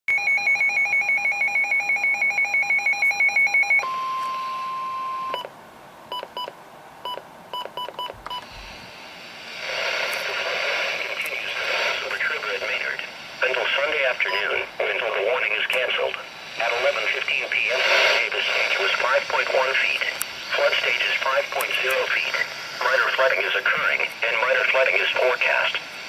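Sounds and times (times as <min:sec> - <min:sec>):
short beeps: 0:02.4 - 0:05.5
hissy radio broadcast: 0:08.3 - 0:26.0.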